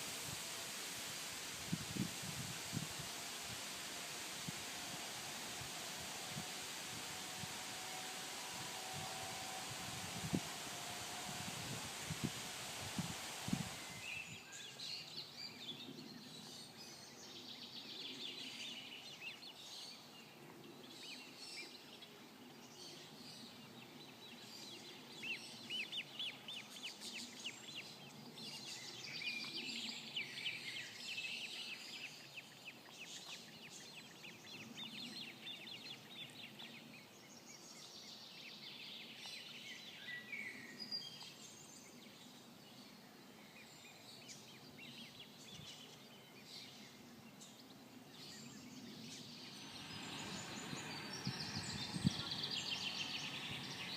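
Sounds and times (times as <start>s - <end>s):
faint background noise: 0.0s - 53.9s
songbirds singing and chirping: 0.0s - 53.9s.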